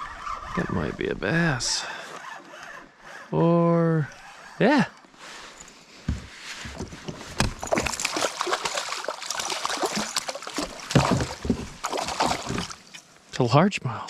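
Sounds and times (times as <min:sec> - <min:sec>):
water splashing: 0:07.4 - 0:13.1
knocks on kayak side: 0:10.9 - 0:12.8.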